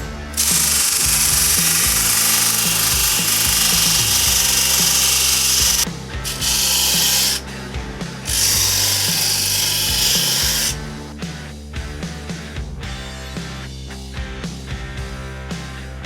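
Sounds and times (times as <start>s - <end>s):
background music with beat: 0.0s - 16.0s
power tool whirring: 0.3s - 7.5s, 8.2s - 10.8s.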